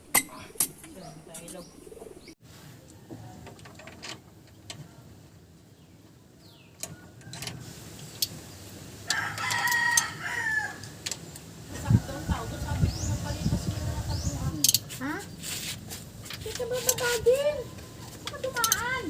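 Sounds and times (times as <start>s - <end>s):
rooster crowing: 9.0s - 11.0s.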